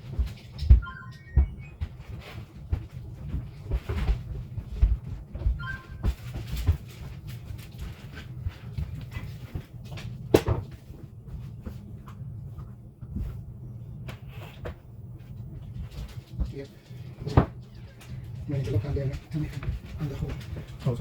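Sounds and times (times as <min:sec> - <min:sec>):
two-tone electronic beep: 0:00.8 - 0:01.8, 0:05.6 - 0:06.1.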